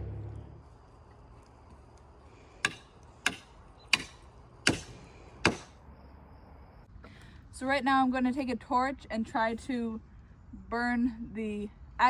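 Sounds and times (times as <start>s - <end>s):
hammer striking wood: 2.6s - 5.8s.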